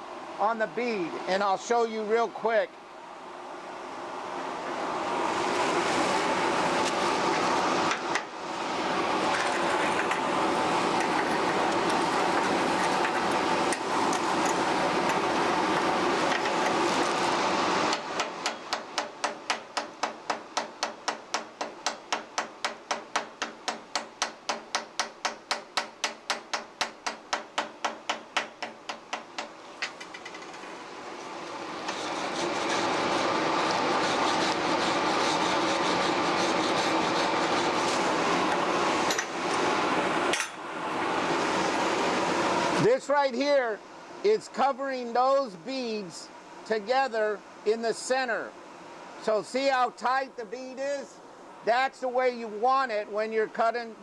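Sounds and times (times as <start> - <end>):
welding arc crackling and hissing: 5.3 - 43.7.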